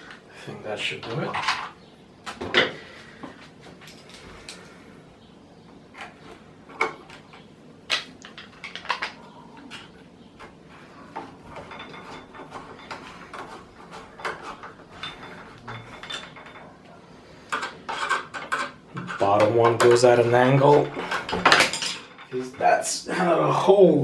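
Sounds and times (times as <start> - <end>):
faint ringing: 9.2 - 23.8.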